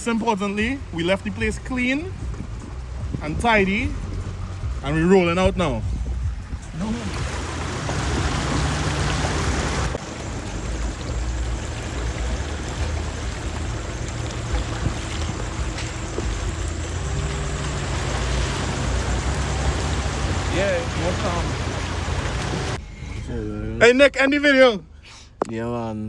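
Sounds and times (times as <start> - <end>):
tyre and road noise: 0.0 - 23.4
car engine hum: 0.0 - 24.7.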